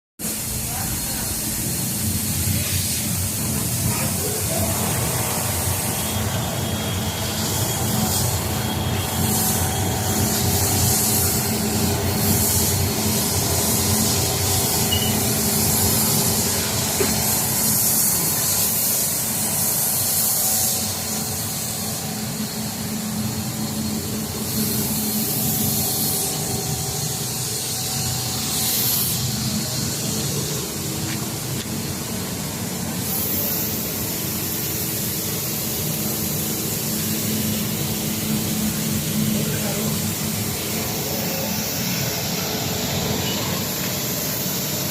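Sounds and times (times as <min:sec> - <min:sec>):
high hiss: 0:00.2 - 0:44.9.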